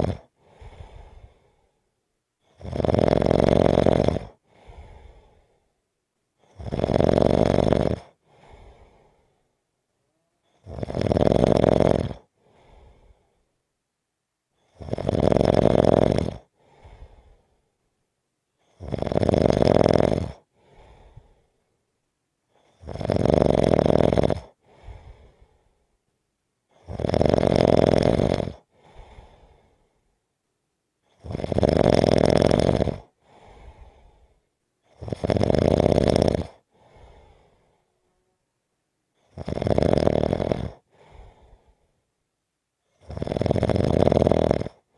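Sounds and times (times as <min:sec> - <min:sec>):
loud rasping snores: 0:00.0 - 0:00.3, 0:02.4 - 0:04.4, 0:06.4 - 0:08.2, 0:10.4 - 0:12.3, 0:14.7 - 0:16.5, 0:18.7 - 0:21.0, 0:22.6 - 0:25.3, 0:26.7 - 0:29.4, 0:31.1 - 0:34.0, 0:34.9 - 0:37.4, 0:39.2 - 0:41.4, 0:42.9 - 0:44.9
faint breath: 0:00.2 - 0:02.6, 0:04.3 - 0:05.8, 0:08.1 - 0:09.7, 0:12.2 - 0:13.6, 0:16.4 - 0:17.9, 0:20.4 - 0:21.8, 0:24.5 - 0:26.0, 0:28.6 - 0:30.2, 0:33.0 - 0:34.6, 0:36.6 - 0:38.2, 0:40.8 - 0:42.1.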